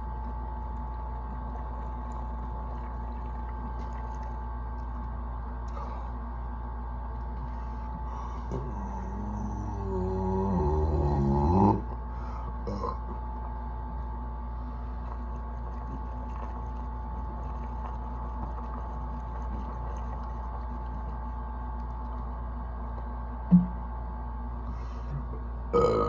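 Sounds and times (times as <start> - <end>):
low background hum: 0.0 - 26.0.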